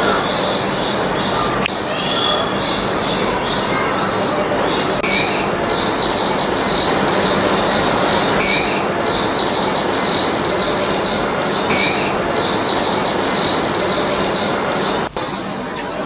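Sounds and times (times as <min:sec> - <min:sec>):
short rising bird call: 0:00.0 - 0:00.6
birds chirping: 0:00.0 - 0:16.0
steady background noise: 0:00.0 - 0:16.0.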